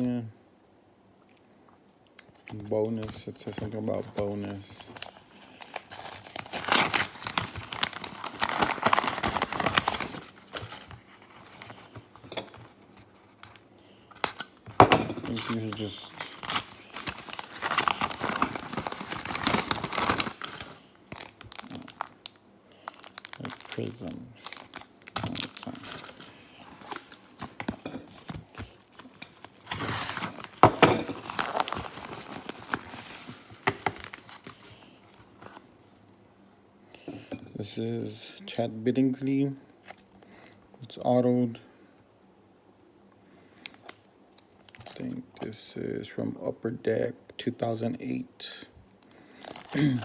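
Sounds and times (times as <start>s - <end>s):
packaging crinkling and tearing: 2.2s - 35.7s, 43.6s - 45.2s, 49.0s - 50.0s.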